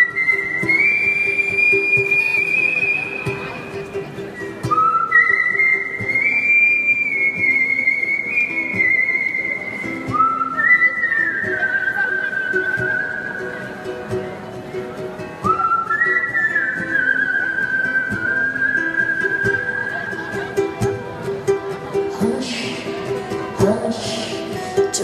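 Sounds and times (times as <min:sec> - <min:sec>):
person whistling a melody: 0:00.0 - 0:14.0, 0:15.4 - 0:20.5.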